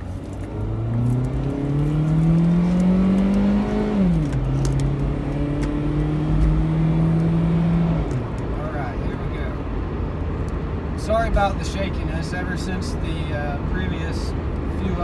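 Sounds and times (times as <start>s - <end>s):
car engine accelerating: 0.0s - 8.8s.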